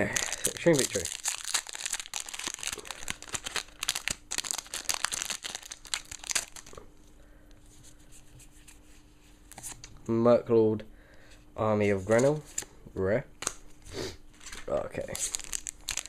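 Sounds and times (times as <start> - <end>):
foil pack tearing and crinkling: 0.0 - 6.7, 14.5 - 16.0.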